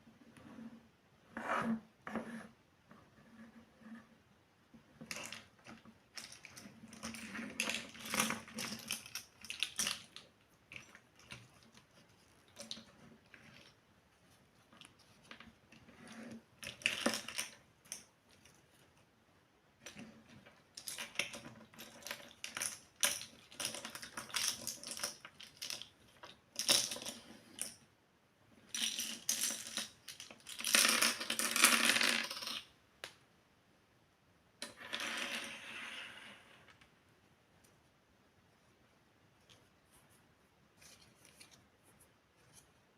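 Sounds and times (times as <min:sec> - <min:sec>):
small toy parts clicking and clinking: 0:05.1 - 0:11.8, 0:14.8 - 0:18.6, 0:19.8 - 0:27.8, 0:28.7 - 0:32.7.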